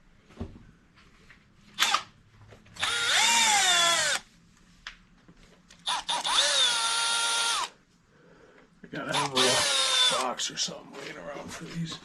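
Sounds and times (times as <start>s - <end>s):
power drill motor whine: 2.8s - 4.2s, 5.8s - 7.8s, 9.1s - 10.2s.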